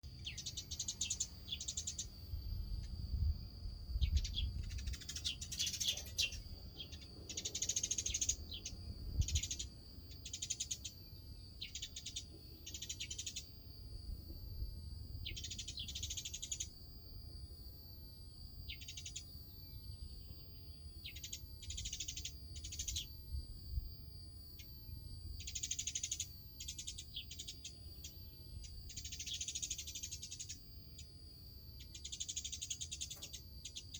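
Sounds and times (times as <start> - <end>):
high-pitched hum: 0.1 - 30.5
birds squabbling harsh calls: 4.4 - 8.7.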